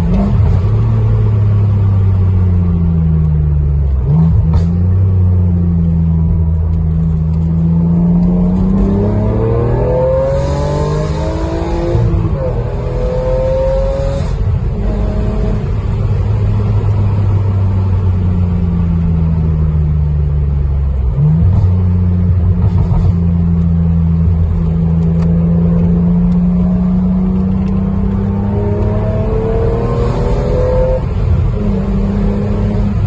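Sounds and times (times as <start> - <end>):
car engine running: 10.9 - 33.0.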